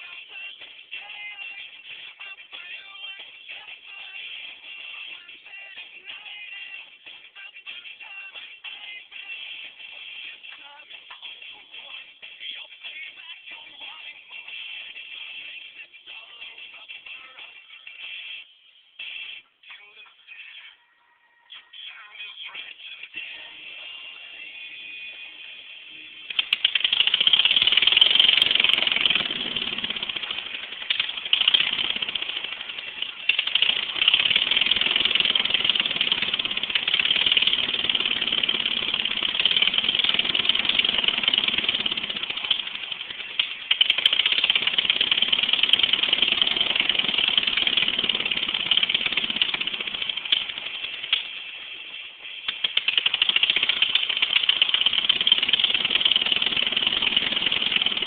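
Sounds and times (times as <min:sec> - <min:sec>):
lawnmower engine running: 0:26.2 - 0:58.0.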